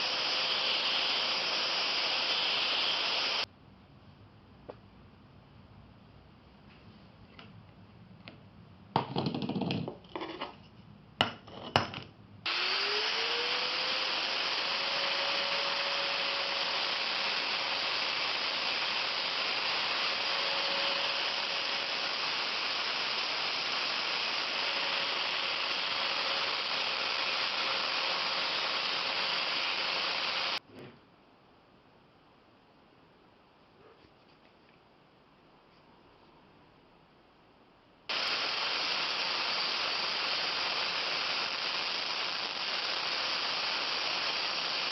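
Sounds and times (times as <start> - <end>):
electric power tool running: 0.0 - 3.4, 12.5 - 30.6, 38.1 - 44.9.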